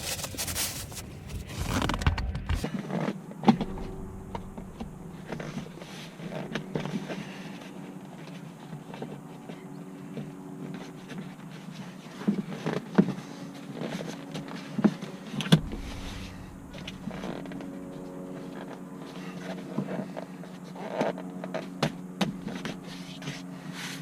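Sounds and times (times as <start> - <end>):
steady low hum: 0.0 - 2.7, 3.5 - 8.4, 15.4 - 19.6.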